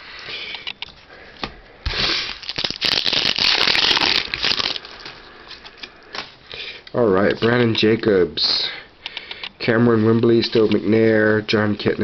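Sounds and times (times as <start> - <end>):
card pack wrapper crinkling and tearing: 1.9 - 6.3.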